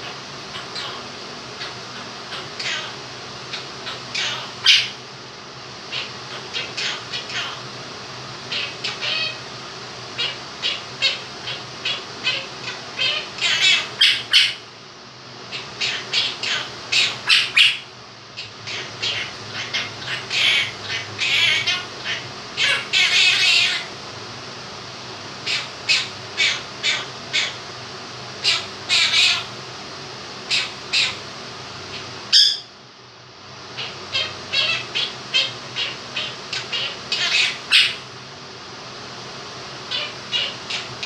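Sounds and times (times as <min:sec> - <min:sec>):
parrot chirping and squawking: 0:00.0 - 0:05.0, 0:05.9 - 0:07.7, 0:08.5 - 0:09.4, 0:10.2 - 0:14.7, 0:15.5 - 0:23.9, 0:25.4 - 0:27.6, 0:28.4 - 0:29.6, 0:30.5 - 0:31.3, 0:31.9 - 0:32.8, 0:33.8 - 0:38.1, 0:39.9 - 0:41.0
fan hissing: 0:00.0 - 0:41.0.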